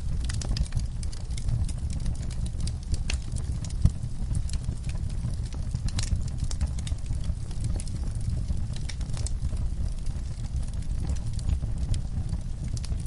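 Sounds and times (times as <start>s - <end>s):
wood fire crackling and popping: 0.0s - 13.0s.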